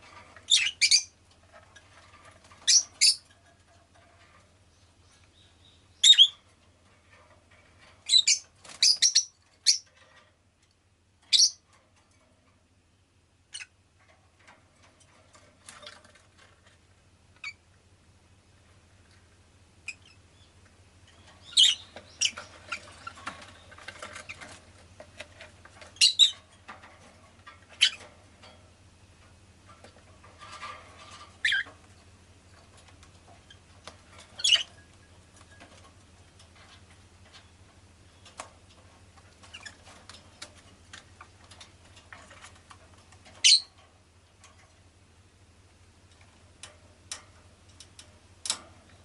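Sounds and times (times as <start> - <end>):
faint scratchy rustling: 0.0 - 5.6, 20.6 - 44.9
lovebird chirping: 0.5 - 1.1, 2.6 - 3.2, 5.0 - 6.4, 8.1 - 9.9, 11.3 - 11.6, 21.4 - 23.1, 26.0 - 26.4, 34.4 - 34.7, 43.4 - 43.7.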